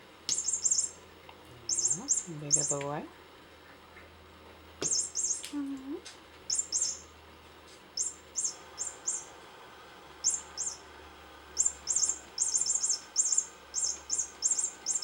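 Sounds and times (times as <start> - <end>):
electronic toy chirping: 0.3 - 1.0, 1.7 - 2.8, 4.8 - 5.5, 6.5 - 7.0, 8.0 - 9.3, 10.2 - 10.8, 11.6 - 15.0.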